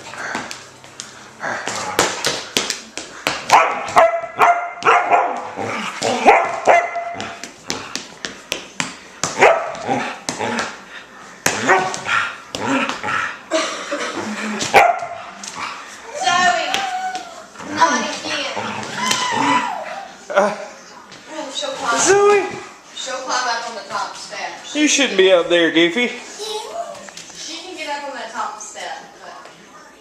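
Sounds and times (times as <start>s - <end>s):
dog barking: 3.5s - 5.5s, 6.1s - 7.3s, 9.4s - 10.0s, 11.6s - 12.0s, 14.7s - 15.2s.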